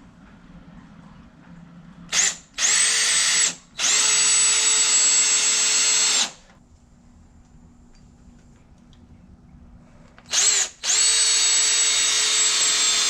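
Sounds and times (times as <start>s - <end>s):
cordless drill driving a screw: 2.1s - 6.4s, 10.3s - 13.0s.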